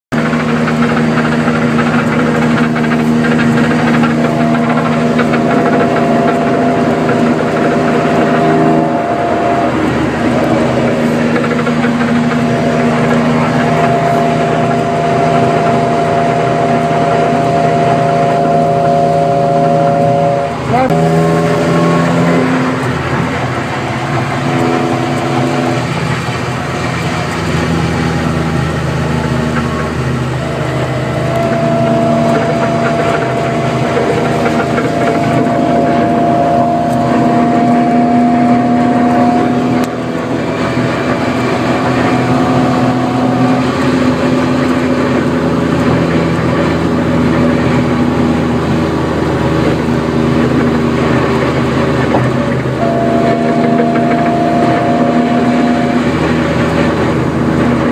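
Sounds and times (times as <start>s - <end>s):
car engine drone: 0.0s - 57.9s
trunk rattle: 0.1s - 45.9s.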